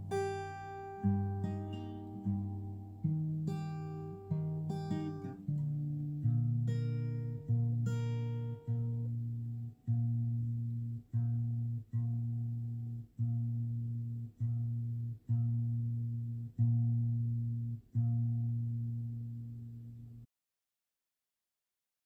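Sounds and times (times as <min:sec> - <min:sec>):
guitar low note picked: 0:00.0 - 0:12.5.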